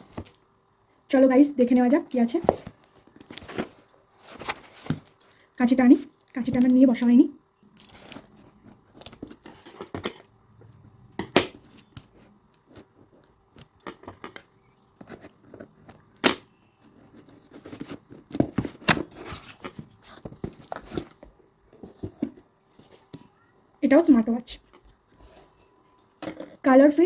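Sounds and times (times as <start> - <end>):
packaging rustling and crinkling: 2.4 - 5.2, 17.1 - 23.2.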